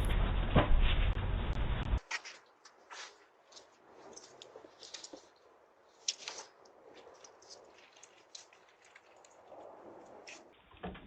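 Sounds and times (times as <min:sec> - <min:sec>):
rough noise with low rumble: 0:00.0 - 0:02.1.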